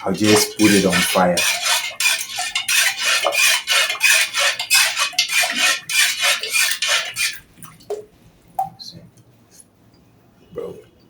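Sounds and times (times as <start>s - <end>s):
spoon stirring rice in a pot: 0.0s - 7.5s.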